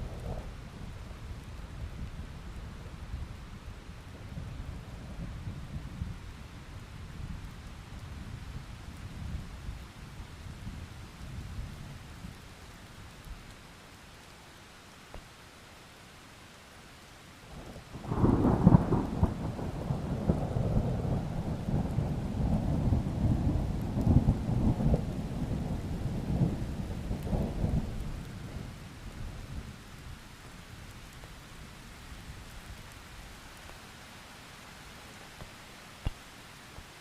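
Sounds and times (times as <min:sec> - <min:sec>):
steady rain: 0:00.0 - 0:37.0
rolling thunder: 0:18.0 - 0:28.8.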